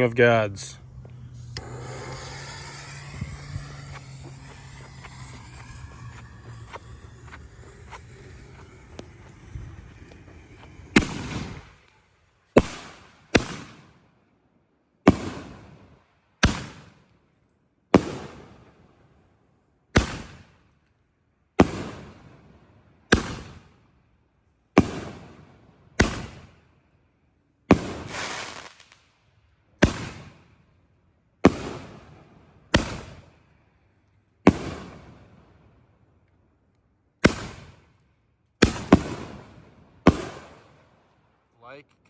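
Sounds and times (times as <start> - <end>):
fireworks bursting with sharp bangs: 1.2 - 14.0, 15.1 - 15.8, 16.4 - 17.0, 18.0 - 18.7, 20.0 - 20.6, 21.6 - 22.4, 23.1 - 23.6, 24.8 - 26.6, 27.7 - 29.2, 29.8 - 30.6, 31.5 - 33.4, 34.5 - 35.4, 37.2 - 37.9, 38.6 - 41.1.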